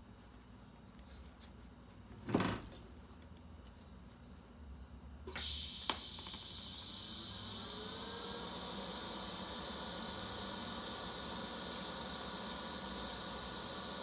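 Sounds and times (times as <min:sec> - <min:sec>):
welding arc hissing: 0:05.4 - 0:14.0.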